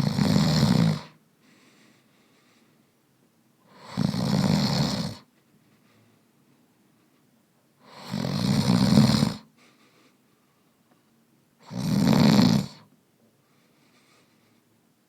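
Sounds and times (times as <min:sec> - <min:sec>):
man snoring loudly: 0:00.0 - 0:01.2, 0:03.7 - 0:05.2, 0:07.8 - 0:09.5, 0:11.6 - 0:12.9.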